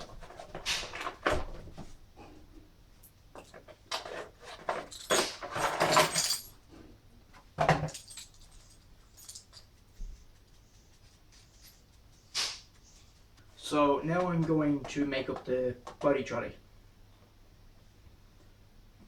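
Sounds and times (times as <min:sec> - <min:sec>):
small parts knocking and rattling: 0:03.3 - 0:06.6, 0:07.6 - 0:10.2.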